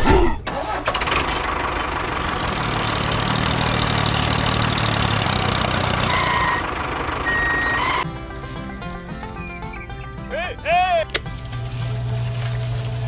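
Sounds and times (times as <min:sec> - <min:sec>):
heavy engine running: 0:00.5 - 0:13.0
short high tones: 0:07.2 - 0:08.2.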